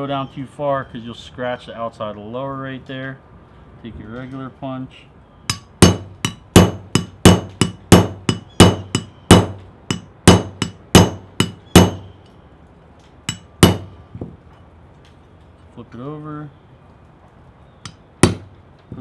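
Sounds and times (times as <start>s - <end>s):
hammer tapping a steel punch: 5.5s - 12.1s, 13.3s - 14.0s, 17.9s - 18.5s.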